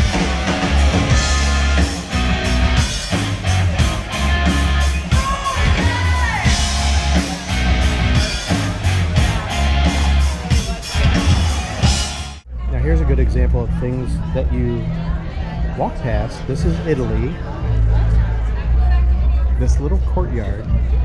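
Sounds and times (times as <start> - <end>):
live rock band playing: 0.0 - 12.4.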